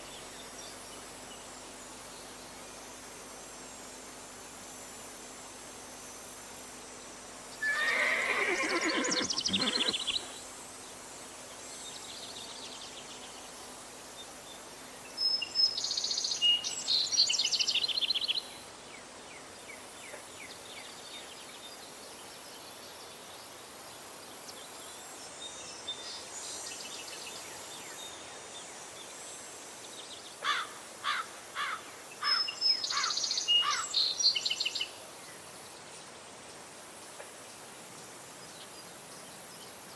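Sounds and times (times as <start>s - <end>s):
steady high hiss: 0.0s - 39.9s
horse whinnying: 7.6s - 10.3s
high chirping calls: 7.7s - 10.3s.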